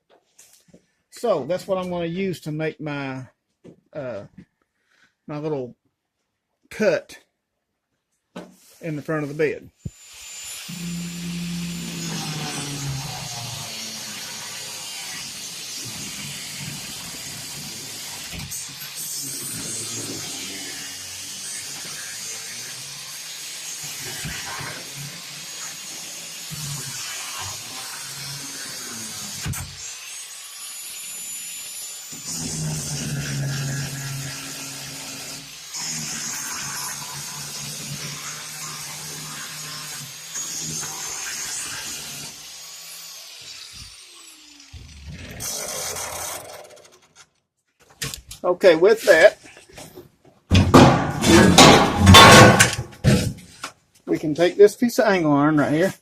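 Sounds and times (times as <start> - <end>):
grinder cutting sheet steel: 9.1 - 47.4, 48.8 - 49.3, 50.7 - 53.6.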